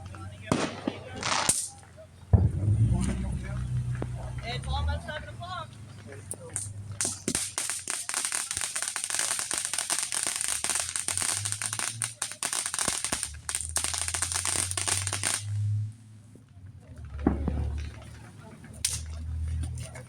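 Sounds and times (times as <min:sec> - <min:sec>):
aerial fireworks crackling: 0:00.4 - 0:01.9, 0:06.6 - 0:15.8.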